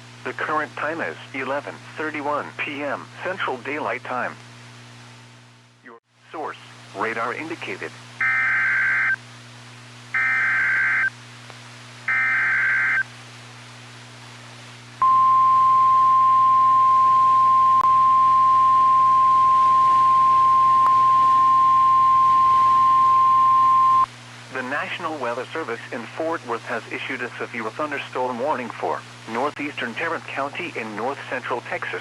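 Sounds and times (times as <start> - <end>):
steady warning alarm tone: 8.2 - 9.2, 10.2 - 11.1, 12.1 - 13.0, 15.0 - 24.1.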